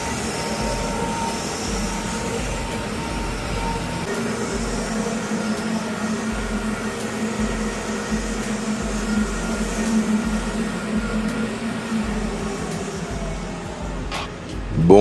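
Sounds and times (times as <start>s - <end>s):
boiler burner humming: 0.0s - 15.0s.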